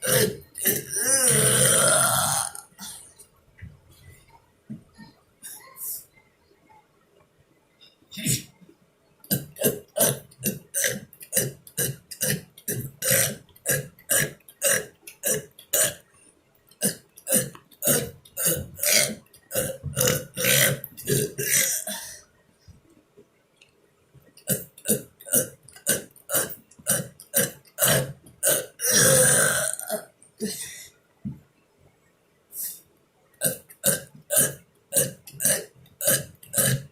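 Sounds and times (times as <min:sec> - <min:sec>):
man burping: 0:00.0 - 0:03.1, 0:08.1 - 0:08.5, 0:09.3 - 0:16.0, 0:16.8 - 0:22.2, 0:24.4 - 0:30.9, 0:33.4 - 0:36.9.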